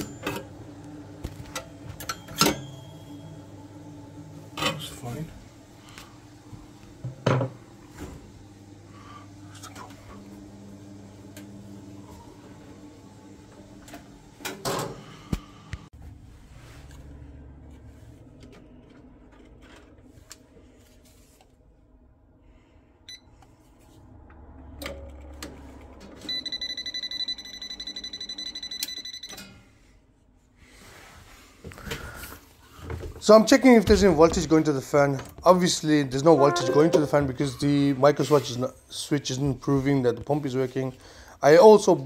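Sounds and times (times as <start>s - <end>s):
test meter buzzer beep: 26.3s - 29.4s.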